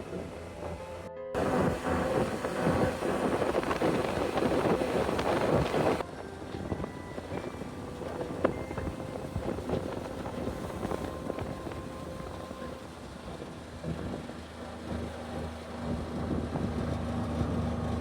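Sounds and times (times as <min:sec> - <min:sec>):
crackling and rattling: 0:00.0 - 0:14.2
engine low drone: 0:00.0 - 0:18.0
wind buffeting microphone: 0:00.0 - 0:18.0.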